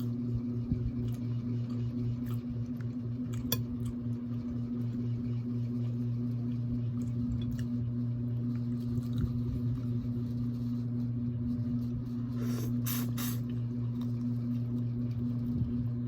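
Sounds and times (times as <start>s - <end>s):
wet eating noises: 6.4s - 10.0s.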